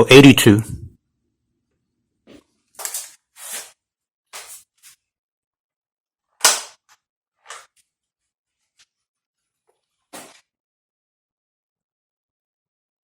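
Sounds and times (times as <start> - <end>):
air rifle shot: 6.4 - 6.8.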